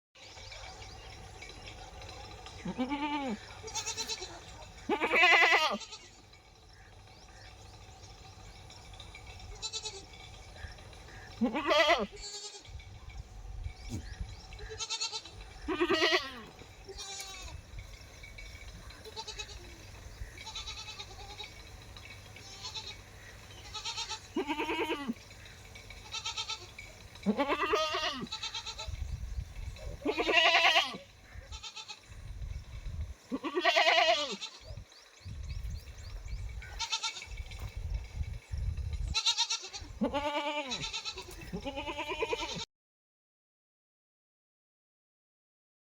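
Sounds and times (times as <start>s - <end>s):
goats bleating: 2.6s - 6.2s, 9.5s - 10.1s, 11.1s - 12.7s, 14.6s - 17.6s, 19.0s - 21.6s, 22.4s - 25.2s, 26.0s - 29.0s, 30.0s - 32.0s, 33.3s - 34.8s, 36.7s - 37.4s, 39.1s - 42.7s.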